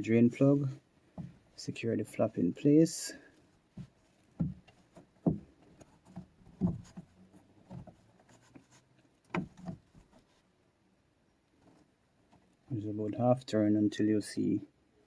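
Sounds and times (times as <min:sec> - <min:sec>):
plastic flap knocking and rubbing: 0:03.7 - 0:08.0, 0:09.3 - 0:10.1.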